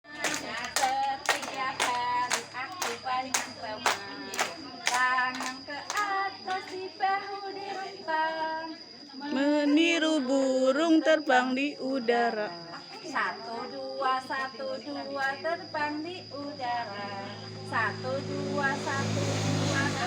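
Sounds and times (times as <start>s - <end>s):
rhythmic hand clapping: 0.0s - 6.8s
children's song sung in unison: 0.0s - 12.4s, 13.0s - 20.0s.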